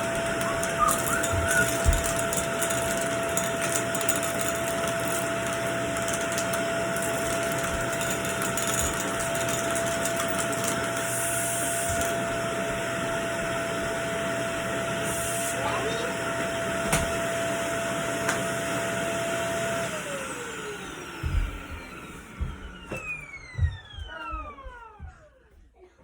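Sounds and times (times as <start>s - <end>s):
vacuum cleaner running: 0.0s - 25.6s.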